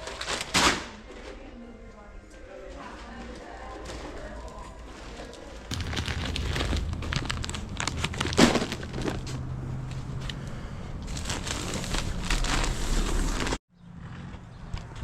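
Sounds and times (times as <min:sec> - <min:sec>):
crinkling and clattering handling: 0:02.6 - 0:10.4, 0:11.0 - 0:13.6.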